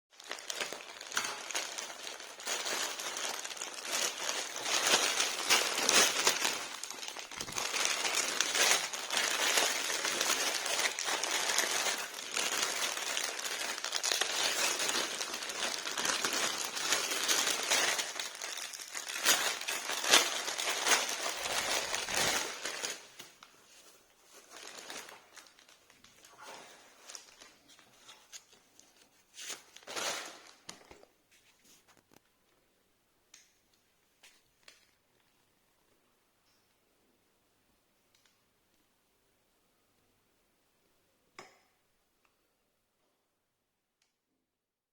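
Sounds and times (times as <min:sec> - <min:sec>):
packaging crinkling and rustling: 0:00.2 - 0:32.2.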